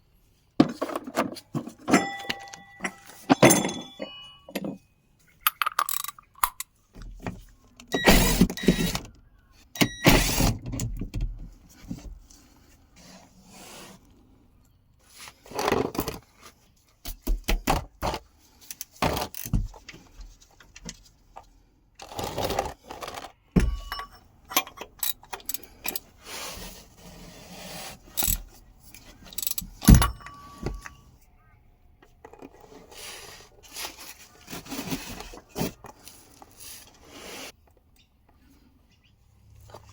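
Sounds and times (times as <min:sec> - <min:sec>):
metal tools clinking and clattering: 0:00.7 - 0:06.7, 0:23.0 - 0:26.1, 0:28.1 - 0:31.1.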